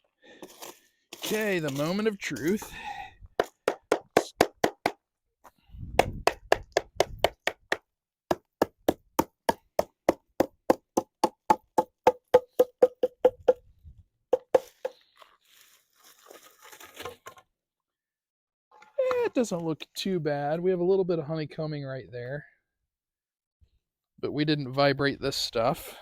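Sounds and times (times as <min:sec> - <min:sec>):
hammer knocking on wood: 0:06.0 - 0:13.6, 0:14.3 - 0:14.7.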